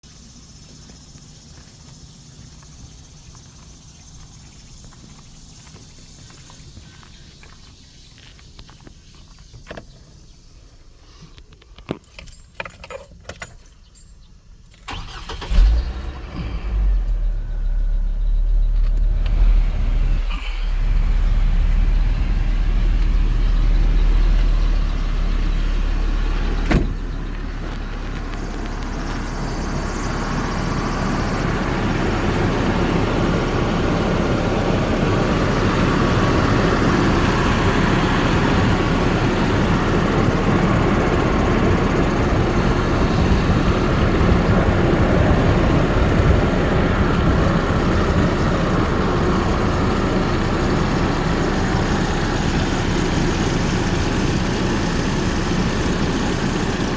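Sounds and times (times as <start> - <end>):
engine idling: 14.7 - 56.9.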